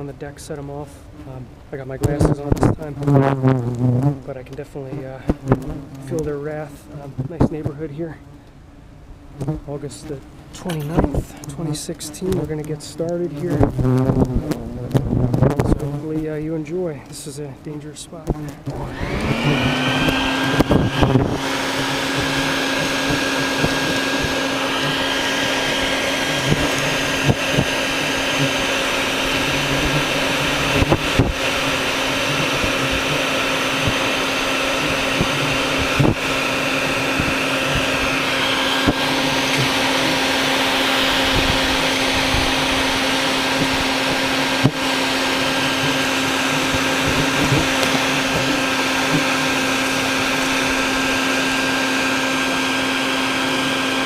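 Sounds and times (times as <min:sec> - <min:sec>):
vacuum cleaner running: 0:18.5 - 0:54.0.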